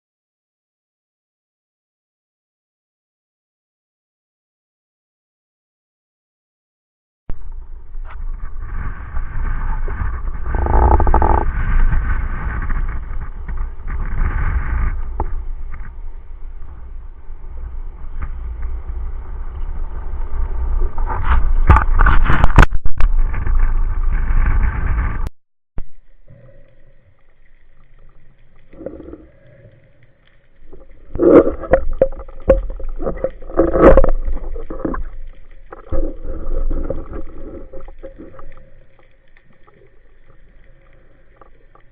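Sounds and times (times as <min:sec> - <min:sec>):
boat engine rumble: 0:07.3 - 0:25.3, 0:25.9 - 0:41.9
knocks and scrapes: 0:07.4 - 0:16.0, 0:20.8 - 0:25.3, 0:30.7 - 0:39.8.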